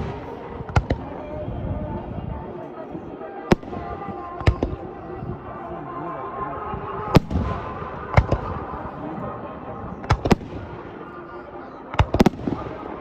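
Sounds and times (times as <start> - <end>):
fireworks bangs: 0.0 - 1.4, 3.5 - 5.4, 6.7 - 9.3, 9.9 - 11.2, 12.0 - 13.0.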